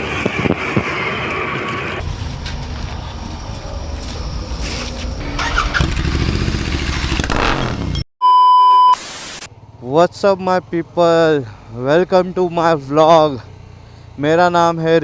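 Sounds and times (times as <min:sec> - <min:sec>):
motorcycle engine running: 0:02.0 - 0:08.0.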